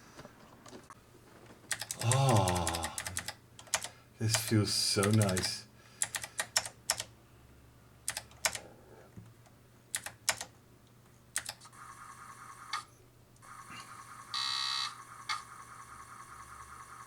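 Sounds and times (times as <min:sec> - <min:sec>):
mechanical keyboard keys clicking: 0:01.7 - 0:02.0, 0:02.6 - 0:07.1, 0:08.1 - 0:08.6, 0:10.0 - 0:10.5, 0:11.4 - 0:11.6
electronic buzzing tone: 0:13.5 - 0:17.0.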